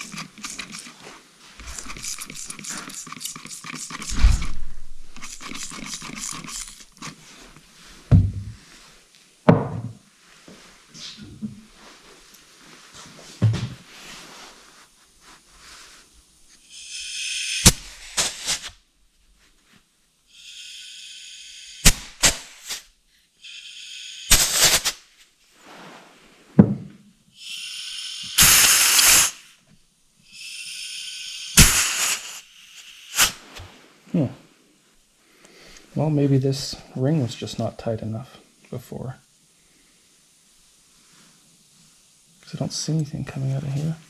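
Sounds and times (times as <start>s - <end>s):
compressed air blowgun hissing: 0.0s - 7.7s, 15.6s - 18.8s, 20.3s - 25.8s, 27.4s - 29.6s, 30.3s - 33.8s.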